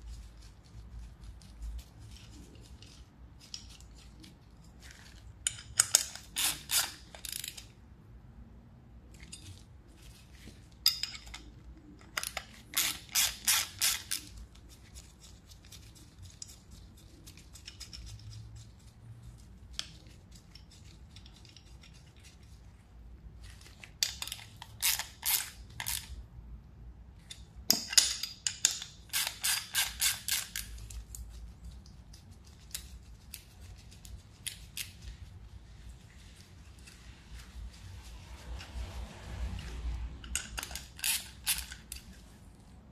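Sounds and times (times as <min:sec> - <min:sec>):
ratchet wrench clicking: 0:05.5 - 0:07.7, 0:12.2 - 0:14.2, 0:27.7 - 0:30.7, 0:40.2 - 0:42.0.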